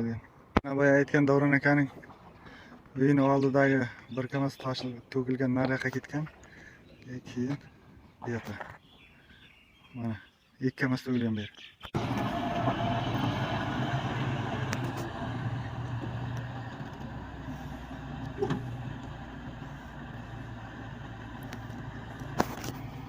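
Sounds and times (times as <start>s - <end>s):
vehicle engine and road noise: 11.9s - 23.0s.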